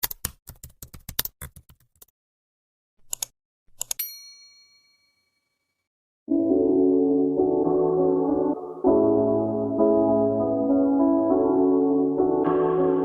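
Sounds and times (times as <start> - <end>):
bright bell-like ding: 4.0 - 5.4
music with sustained keyboard notes: 6.3 - 13.0.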